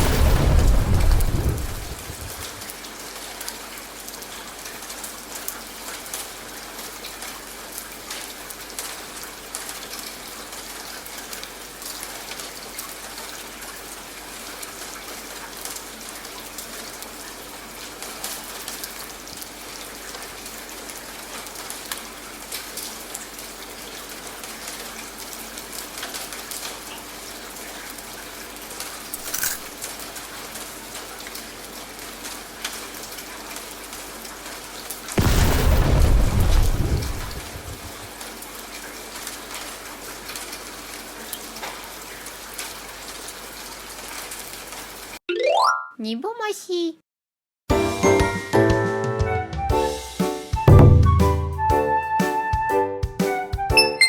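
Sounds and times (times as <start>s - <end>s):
thunder clap rumbling: 0.0s - 2.6s, 35.2s - 38.1s
steady rain falling: 0.0s - 45.2s.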